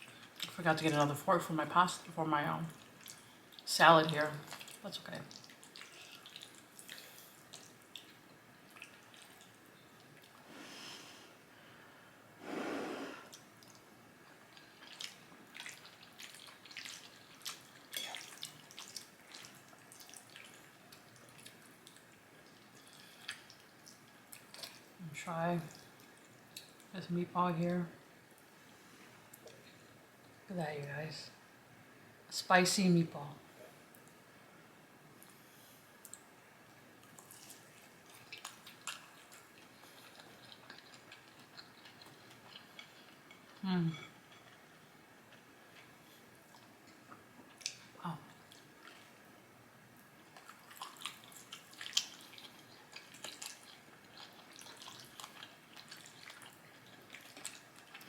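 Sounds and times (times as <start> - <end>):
wet chewing and smacking: 2.7 - 3.7, 4.4 - 10.4, 13.3 - 25.0, 37.0 - 49.2, 50.0 - 58.0.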